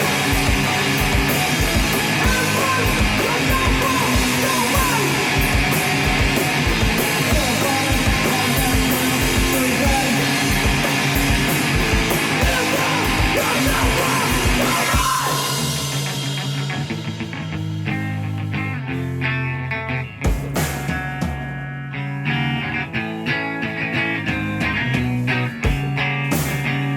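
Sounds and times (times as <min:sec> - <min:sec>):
fast drum beat: 0:00.0 - 0:17.5, 0:20.3 - 0:21.5
distorted electric guitars: 0:00.0 - 0:26.9.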